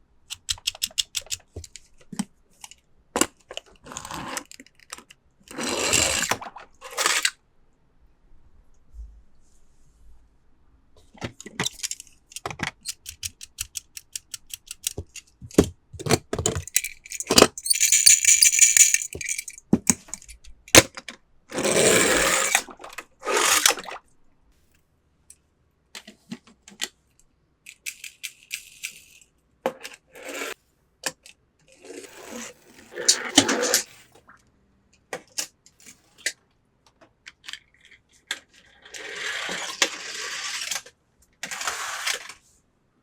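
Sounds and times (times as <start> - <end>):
sharp clicks and rattles: 0.3 - 1.9, 11.4 - 20.4.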